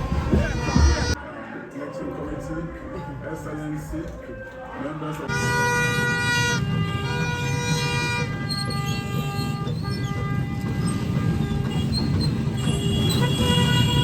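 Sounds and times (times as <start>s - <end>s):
horns blowing long notes: 0.0s - 1.2s, 5.1s - 14.0s
large crowd noise: 0.0s - 8.6s.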